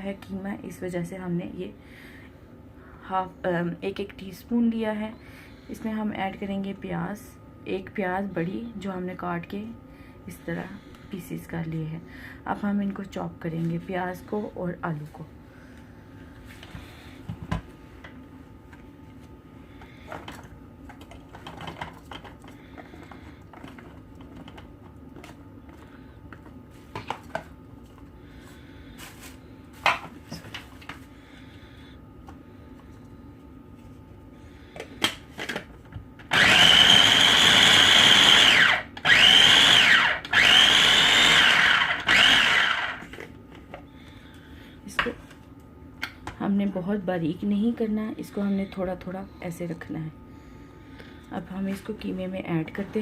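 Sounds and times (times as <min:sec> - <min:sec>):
electric food chopper whining: 0:36.2 - 0:43.2.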